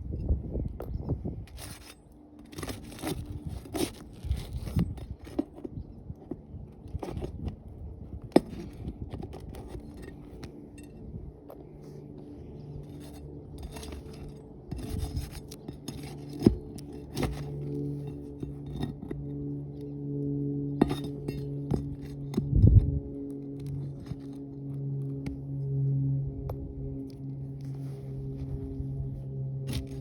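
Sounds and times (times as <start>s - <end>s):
steady low hum: 0.0s - 30.0s
scraping on roof shingles: 1.5s - 5.7s.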